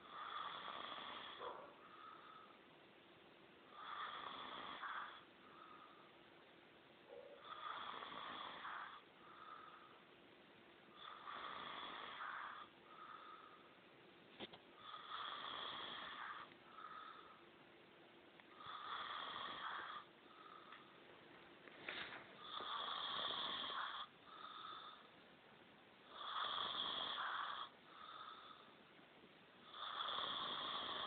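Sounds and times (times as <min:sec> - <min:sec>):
man snoring: 0:00.0 - 0:01.5, 0:03.7 - 0:05.2, 0:07.4 - 0:09.0, 0:11.0 - 0:12.7, 0:14.8 - 0:17.2, 0:18.6 - 0:20.1, 0:22.4 - 0:25.0, 0:26.1 - 0:28.6, 0:29.7 - 0:31.0
soft breath sound: 0:00.0 - 0:02.9, 0:03.6 - 0:10.2, 0:10.9 - 0:17.7, 0:18.4 - 0:25.2, 0:26.1 - 0:29.0.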